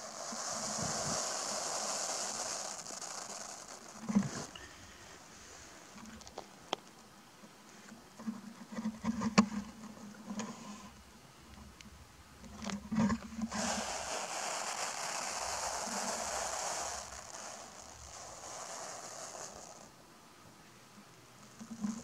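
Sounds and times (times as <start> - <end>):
snake hissing: 0.0 - 6.0, 13.4 - 20.0.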